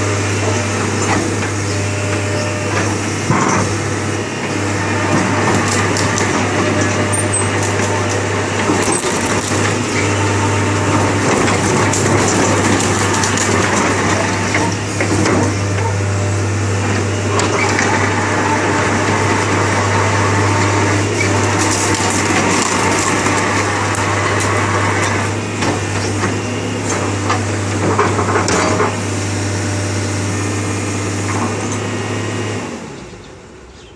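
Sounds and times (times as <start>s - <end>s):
excavator clanks and knocks: 0.0s - 29.2s, 30.4s - 32.0s
excavator diesel engine droning: 0.0s - 33.9s.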